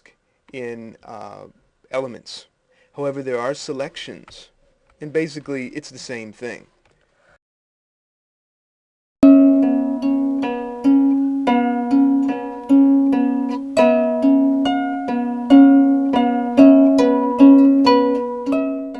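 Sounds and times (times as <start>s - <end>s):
plucked string tune: 9.2s - 18.9s.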